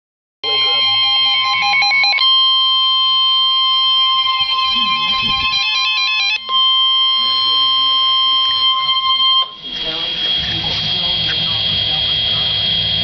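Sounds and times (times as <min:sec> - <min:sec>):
short tones stepping in pitch: 0:00.4 - 0:09.6
high-pitched alarm tone: 0:00.4 - 0:13.0.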